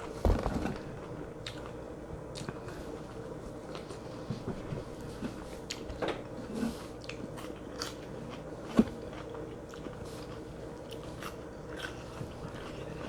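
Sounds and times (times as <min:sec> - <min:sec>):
sharp knock: 0:00.2 - 0:00.9.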